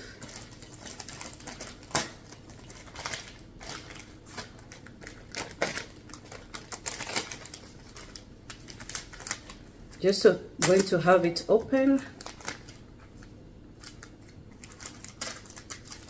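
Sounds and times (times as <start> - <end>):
plastic bag crinkling: 0.0 - 12.9, 13.8 - 16.0.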